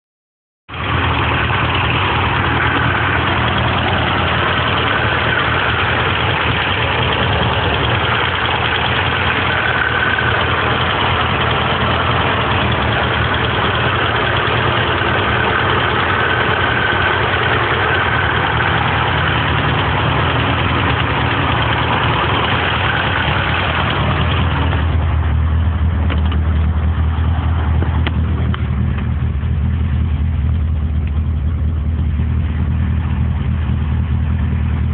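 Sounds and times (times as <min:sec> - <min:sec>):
car engine idling: 0:00.7 - 0:34.9.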